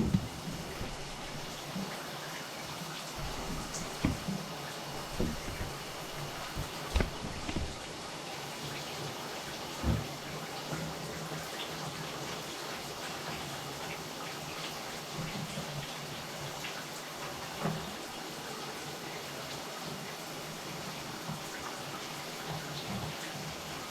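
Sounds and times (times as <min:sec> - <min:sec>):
dull thump: 0:00.0 - 0:01.6, 0:03.2 - 0:04.4, 0:05.0 - 0:07.9
water running into bathtub: 0:00.0 - 0:23.9.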